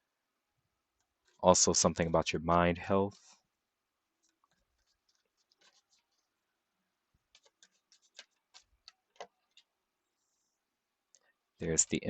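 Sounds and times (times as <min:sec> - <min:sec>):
cards clicking and scratching: 0:04.2 - 0:06.3, 0:07.3 - 0:09.7.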